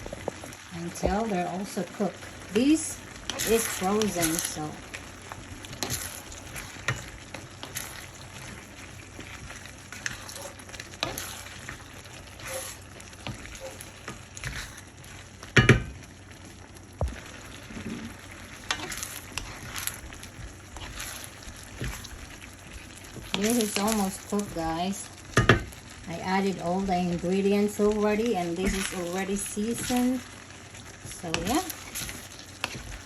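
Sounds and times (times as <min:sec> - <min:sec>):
food sizzling in a pan: 0:00.0 - 0:33.0
utensil scraping a pan: 0:05.7 - 0:14.8, 0:17.7 - 0:24.8.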